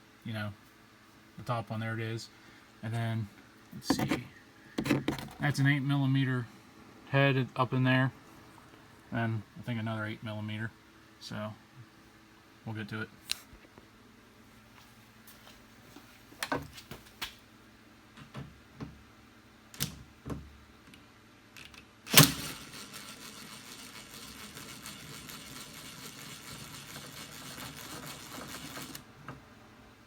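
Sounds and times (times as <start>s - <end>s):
rapid mechanical clicking of tool: 22.1s - 29.0s.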